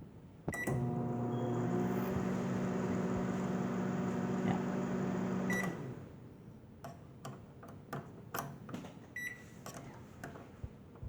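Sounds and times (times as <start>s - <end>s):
microwave oven beep: 0.5s - 6.0s, 9.2s - 9.4s.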